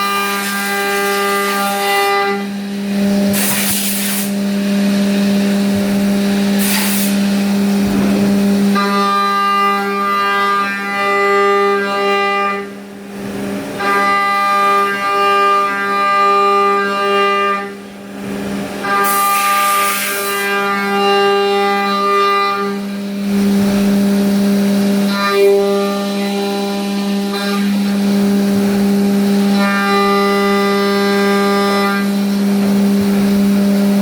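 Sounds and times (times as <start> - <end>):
burst of hiss: 3.3 - 4.3, 6.6 - 7.2
low machine hum: 4.4 - 9.4.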